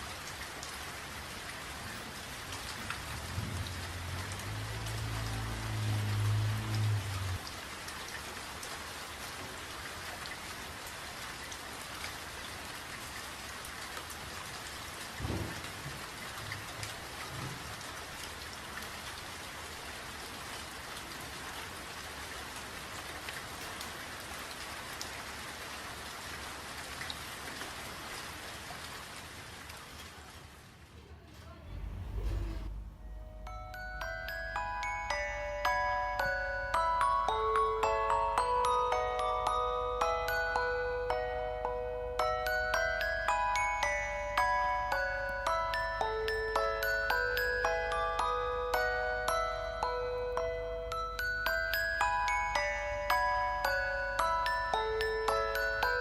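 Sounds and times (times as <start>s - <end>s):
steady rain falling: 0.0s - 56.0s
low rumble: 31.6s - 33.8s.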